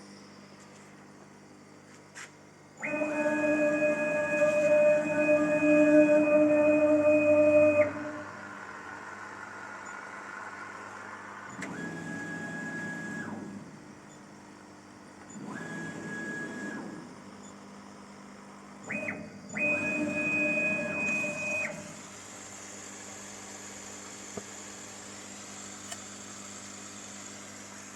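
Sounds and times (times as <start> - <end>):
steady machine hum: 0.0 - 16.1
stepper motors whining: 2.8 - 10.1, 18.9 - 22.1.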